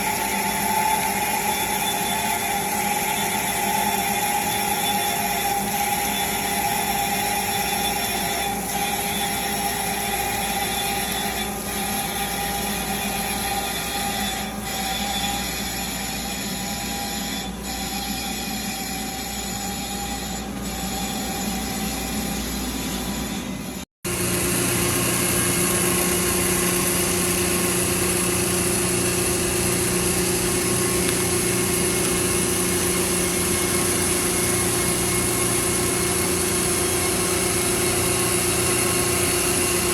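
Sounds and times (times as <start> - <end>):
grinding machine whine: 0.0 - 39.9
motor hum: 24.1 - 39.9.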